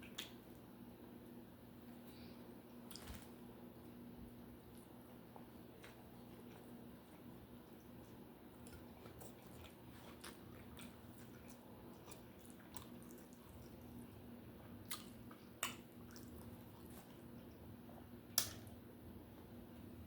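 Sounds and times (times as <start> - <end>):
chewing and wet mouth clicks: 8.6 - 14.0, 14.8 - 17.2.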